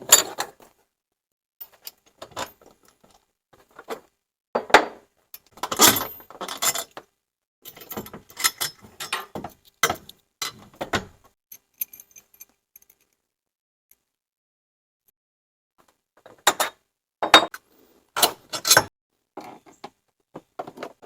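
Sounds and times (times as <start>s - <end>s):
metal tools and bolts clinking: 1.6s - 2.7s, 5.4s - 7.0s, 7.7s - 10.7s, 11.5s - 13.1s.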